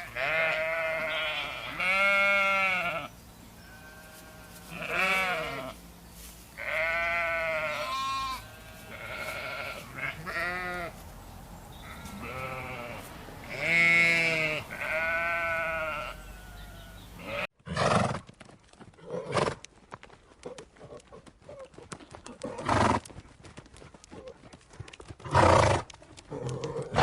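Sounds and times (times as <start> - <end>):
sheep bleating: 0.0 - 5.8, 6.6 - 11.0, 11.7 - 17.5.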